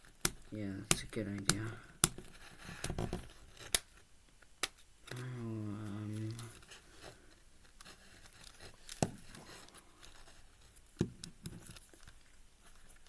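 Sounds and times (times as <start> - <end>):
fingernails scratching tape: 0.0 - 3.9
sharp knocks on plastic cube: 0.2 - 3.8, 8.9 - 9.4, 11.0 - 11.6.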